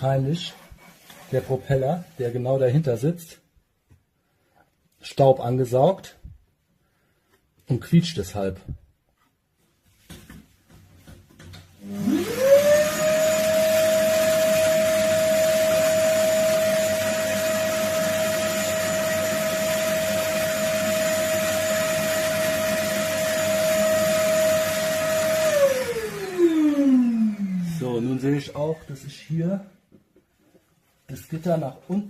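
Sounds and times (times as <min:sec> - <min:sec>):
vacuum cleaner running: 0:11.8 - 0:29.3.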